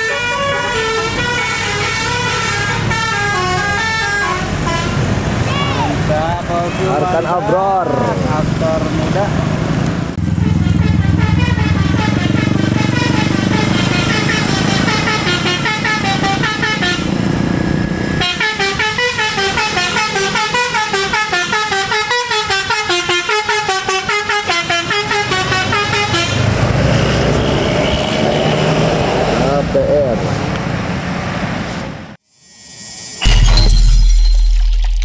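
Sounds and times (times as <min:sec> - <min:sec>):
multi-tone bus horn melody: 0:00.0 - 0:07.4, 0:10.2 - 0:28.8
bus engine drone: 0:00.0 - 0:32.3.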